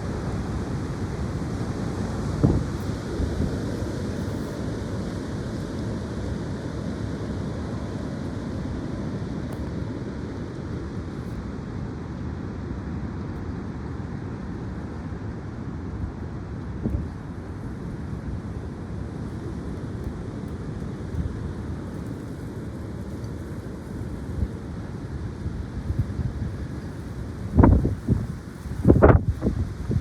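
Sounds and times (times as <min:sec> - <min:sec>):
wind buffeting the microphone: 0:00.0 - 0:05.6, 0:16.0 - 0:18.8, 0:21.0 - 0:30.0
wind buffeting microphone: 0:02.3 - 0:04.4, 0:25.4 - 0:30.0.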